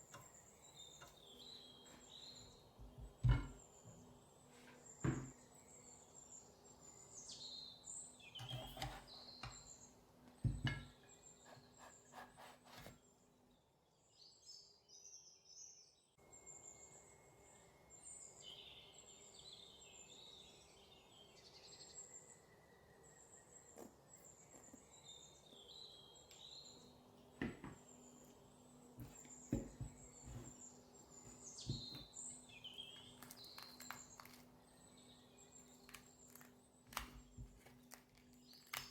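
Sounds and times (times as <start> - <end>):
faint birds chirping: 0.0 - 38.9
knocks: 3.0 - 3.6.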